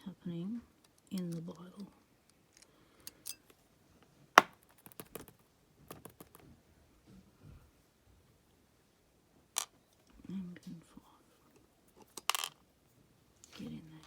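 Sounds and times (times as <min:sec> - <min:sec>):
metal tools clicking on padlock: 0:02.6 - 0:03.5.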